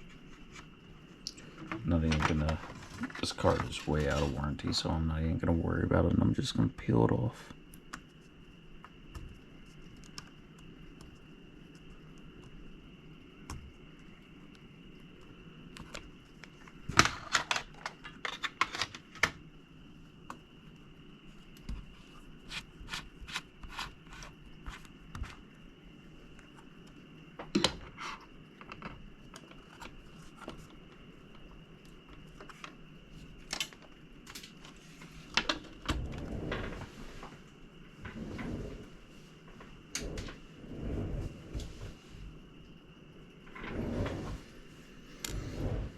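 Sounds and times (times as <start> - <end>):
longer scraping sound: 45.2 - 45.9.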